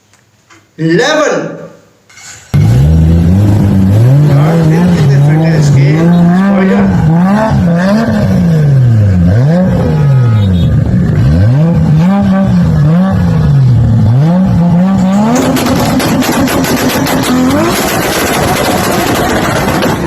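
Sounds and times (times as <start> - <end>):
car engine revving: 2.6 - 20.0
exhaust pops crackling: 14.5 - 20.0.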